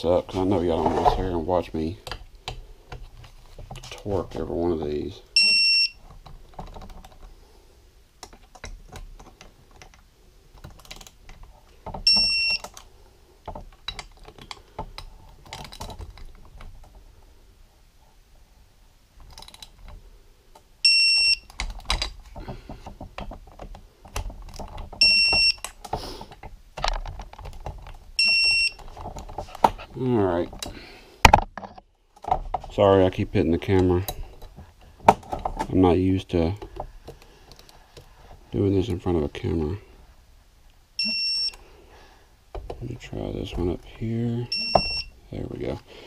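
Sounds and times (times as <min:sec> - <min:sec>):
torque wrench beeping: 0:05.4 - 0:06.0, 0:12.1 - 0:12.7, 0:20.8 - 0:21.5, 0:25.0 - 0:25.7, 0:41.0 - 0:41.6, 0:44.5 - 0:45.1.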